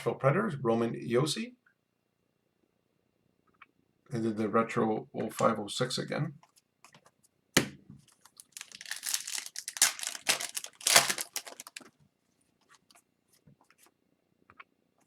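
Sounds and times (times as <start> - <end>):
packaging crinkling and rustling: 8.0 - 12.0.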